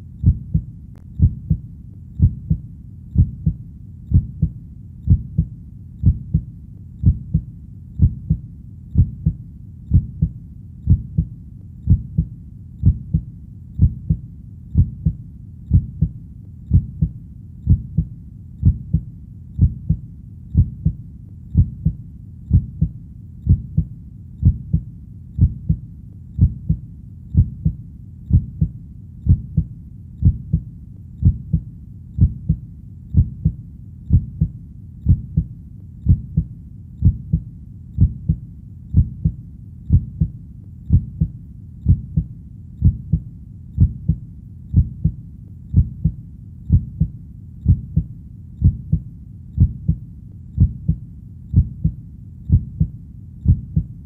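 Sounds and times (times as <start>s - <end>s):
heartbeat double thumps: 0.0s - 25.8s, 26.4s - 50.0s, 50.6s - 54.0s
faint low rumble: 0.0s - 54.0s.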